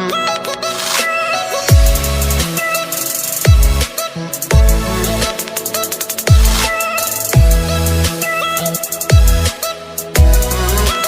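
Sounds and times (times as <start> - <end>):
electronic music with heavy bass: 0.0 - 11.0.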